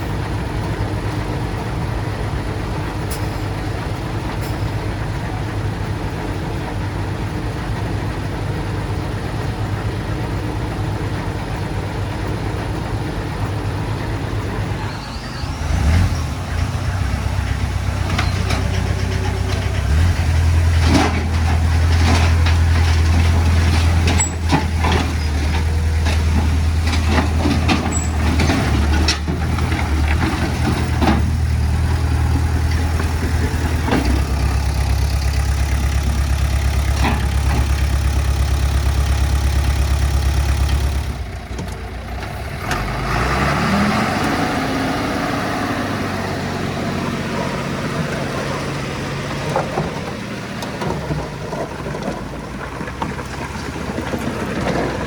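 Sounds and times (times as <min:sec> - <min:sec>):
bulldozer diesel engine running: 0:00.0 - 0:55.0
clanks and knocks: 0:17.5 - 0:35.0.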